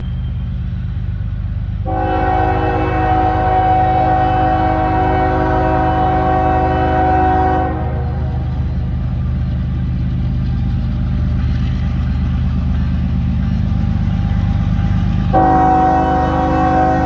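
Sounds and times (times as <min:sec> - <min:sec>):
diesel engine rumble: 0:00.0 - 0:17.0
locomotive air horn blast: 0:01.8 - 0:08.4, 0:15.3 - 0:17.0.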